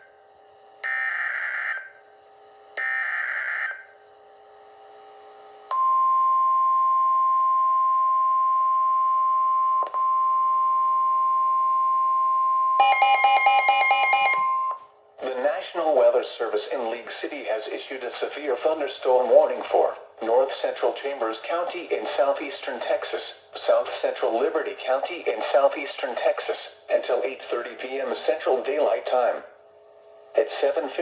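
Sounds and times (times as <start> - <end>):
fast-pulsing beep: 12.8 - 14.8.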